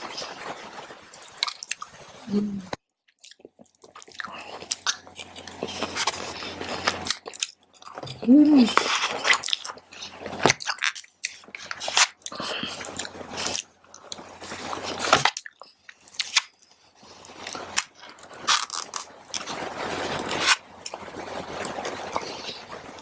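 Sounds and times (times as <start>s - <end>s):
chewing with mouth smacks: 3.0s - 19.0s.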